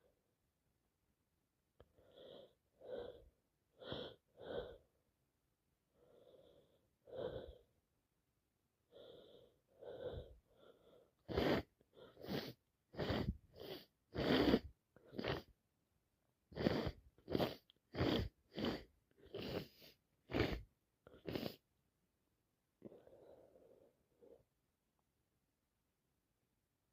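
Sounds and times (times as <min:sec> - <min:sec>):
breathy gasping inhales: 0:08.9 - 0:15.5, 0:16.5 - 0:21.6.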